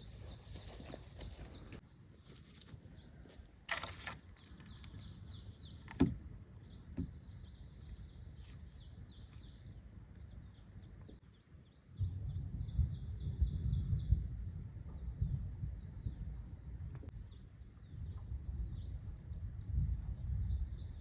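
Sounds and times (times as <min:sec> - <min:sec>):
small birds chirping: 0:00.0 - 0:21.0
low rumbling noise: 0:11.7 - 0:21.0.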